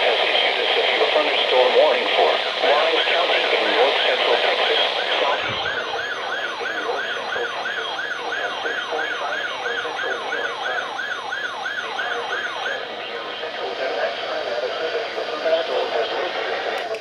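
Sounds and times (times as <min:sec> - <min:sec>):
electronic alert siren yelping: 0:05.2 - 0:12.9.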